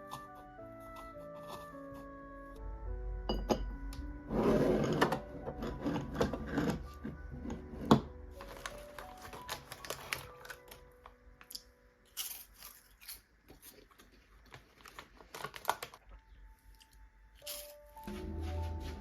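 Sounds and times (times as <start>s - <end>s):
faint music tones: 0.0s - 13.2s, 15.6s - 19.0s
objects clicking and rustling: 7.9s - 16.0s.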